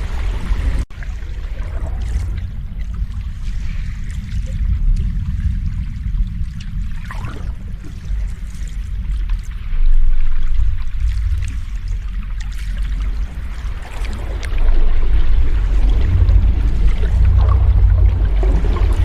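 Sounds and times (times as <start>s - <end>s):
sea waves rumbling: 0.0s - 19.0s.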